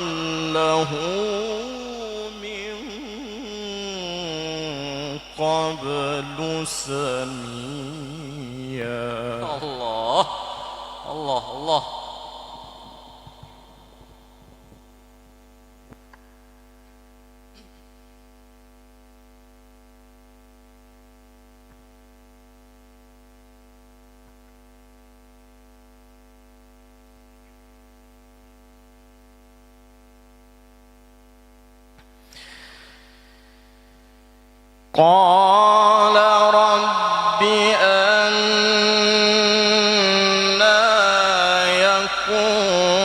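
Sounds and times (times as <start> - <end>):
electrical mains hum: 0.0 - 43.0
brief hiss: 32.2 - 34.0.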